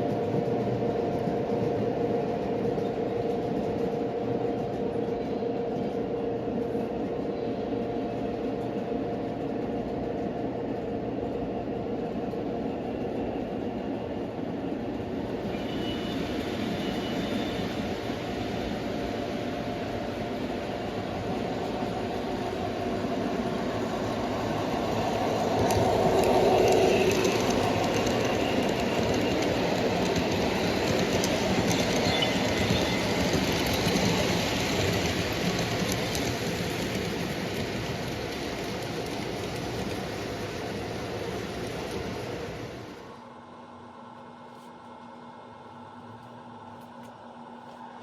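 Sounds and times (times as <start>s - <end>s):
wheel and track rumble: 0.0s - 43.1s
faint high squeal: 15.3s - 18.4s.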